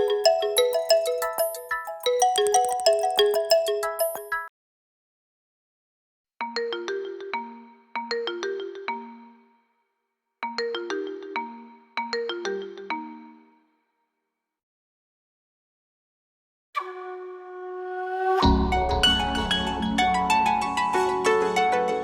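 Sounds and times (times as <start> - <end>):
phone ringtone melody: 0.0 - 4.5.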